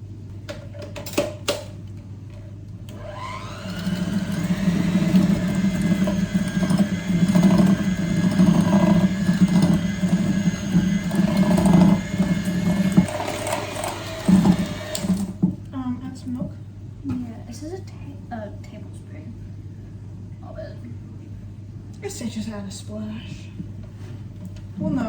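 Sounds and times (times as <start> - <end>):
electric mixer motor: 2.9 - 15.4.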